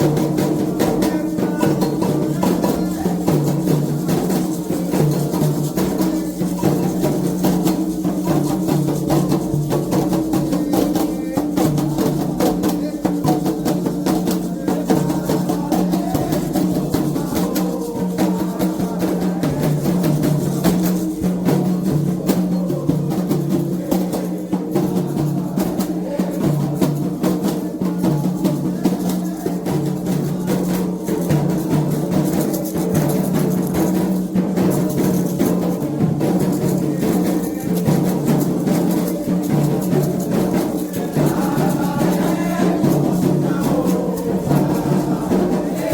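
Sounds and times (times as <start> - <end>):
ritual hand drumming: 0.0 - 45.9.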